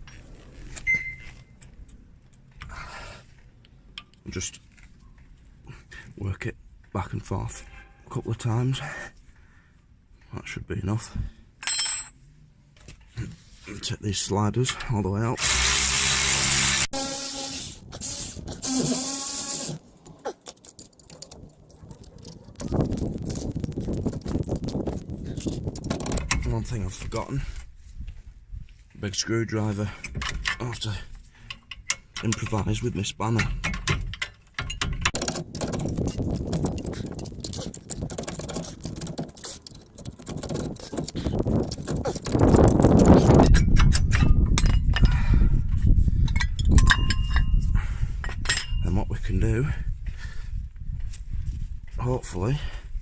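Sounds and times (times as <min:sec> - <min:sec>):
metallic clicking and rattling: 0:20.0 - 0:26.7, 0:33.4 - 0:45.1
slider pins scraping and squeaking: 0:33.4 - 0:44.2
spanner tapping on brake caliper: 0:33.6 - 0:45.1.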